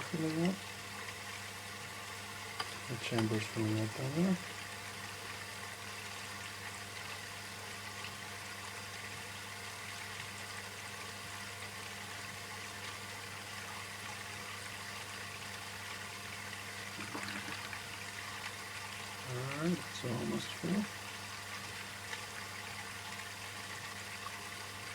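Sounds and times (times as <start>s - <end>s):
water rushing into dishwasher: 16.9s - 18.6s
low steady hum: 16.9s - 21.9s.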